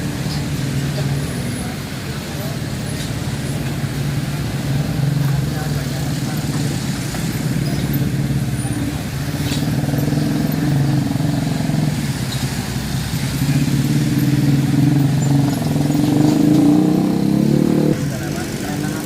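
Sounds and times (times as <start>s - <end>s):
vehicle engines running: 0.0s - 19.0s.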